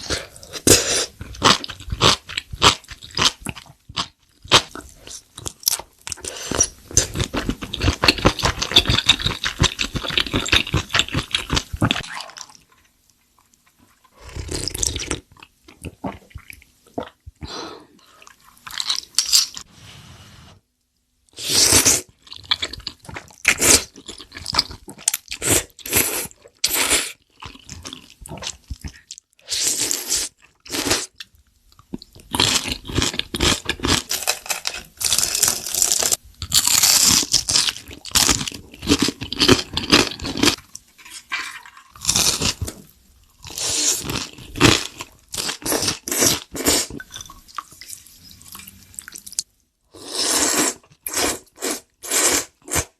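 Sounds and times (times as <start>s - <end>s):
crunching and chewing: 1.0s - 12.8s.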